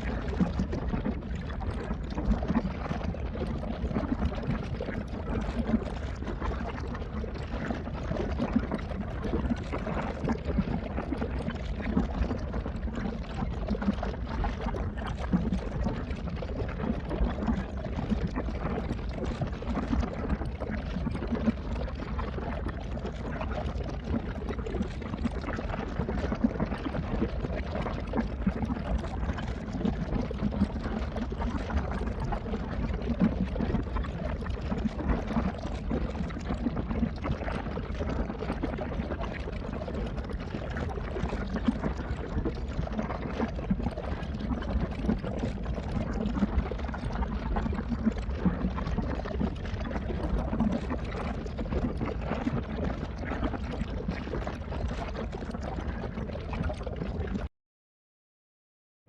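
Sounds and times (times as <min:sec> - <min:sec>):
moving water: 0:00.0 - 0:57.5.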